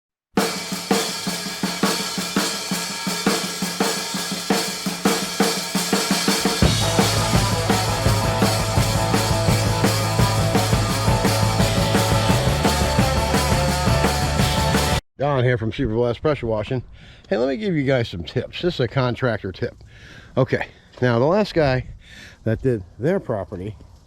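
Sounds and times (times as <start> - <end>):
drum kit beat: 0.4 - 15.0
pitched instruments: 6.2 - 15.0
bass line: 6.4 - 15.0.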